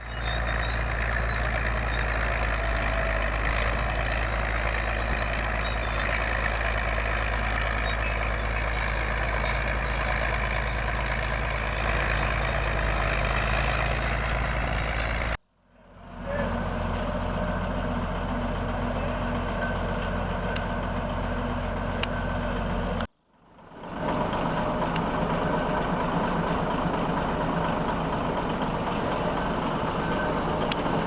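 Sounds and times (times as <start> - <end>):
bulldozer engine running: 0.0 - 31.0.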